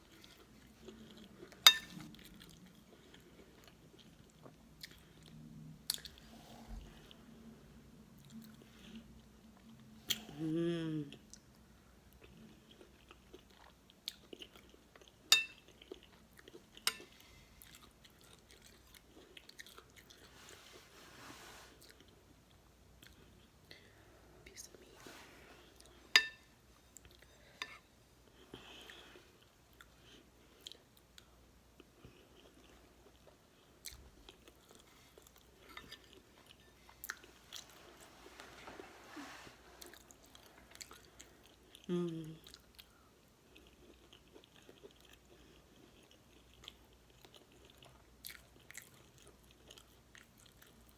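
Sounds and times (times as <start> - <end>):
person chewing: 12.1 - 20.4, 39.8 - 50.9.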